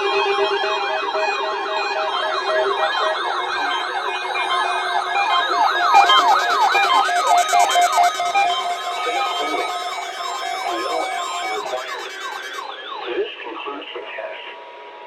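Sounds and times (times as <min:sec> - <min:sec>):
electronic sirens sweeping: 0:05.6 - 0:12.7.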